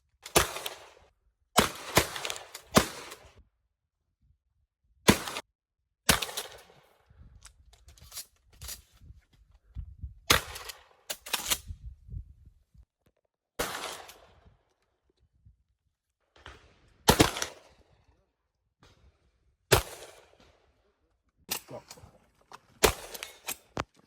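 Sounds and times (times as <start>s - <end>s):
shotgun shots echoing: 5.1s - 5.4s, 13.6s - 14.3s, 16.4s - 17.8s, 19.7s - 20.4s, 22.8s - 23.5s.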